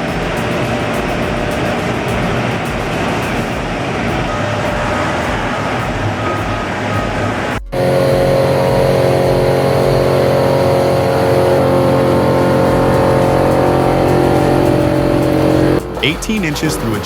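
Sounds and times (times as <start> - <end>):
rough machine noise: 0.0 - 17.0
wood chipper engine running: 7.8 - 17.0.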